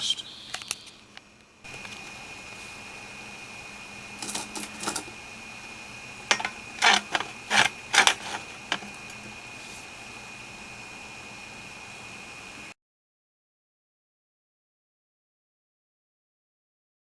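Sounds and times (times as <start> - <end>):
metal cookware clinking and rattling: 4.2 - 5.1, 6.3 - 8.9.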